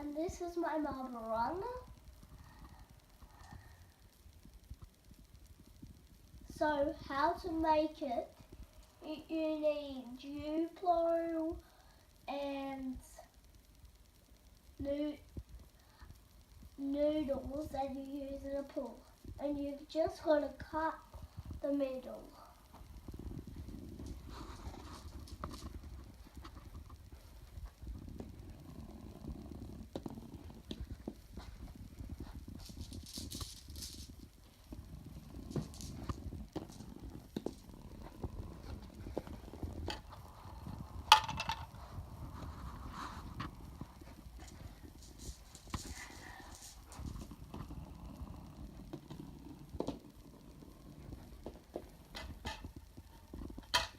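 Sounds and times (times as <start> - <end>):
marbles rolling rumble: 20.4 - 53.9
small rattling clicks and knocks: 52.1 - 53.9.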